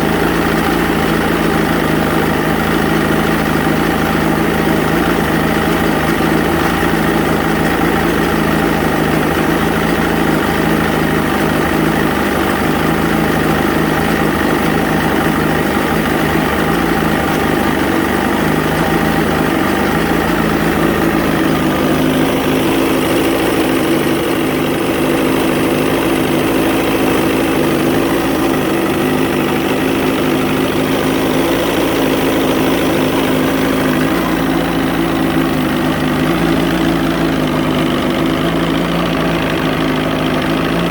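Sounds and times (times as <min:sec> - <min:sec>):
outboard motor idling: 0:00.0 - 0:40.9.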